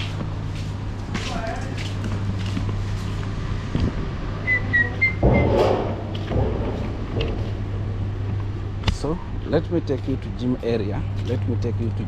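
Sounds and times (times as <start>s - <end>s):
steady low hum: 0.0s - 12.0s
high whistle-like chirps: 4.4s - 5.2s.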